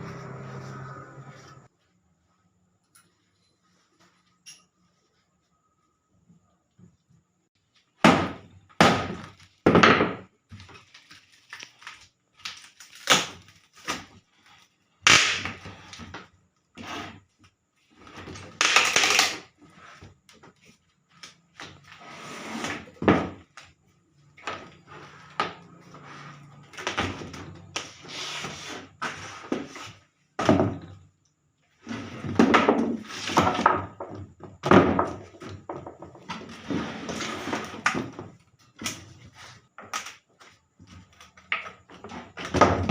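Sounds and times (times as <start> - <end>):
wooden knocks and thuds: 8.0 - 10.3, 30.4 - 31.0, 32.3 - 36.5, 40.9 - 42.9.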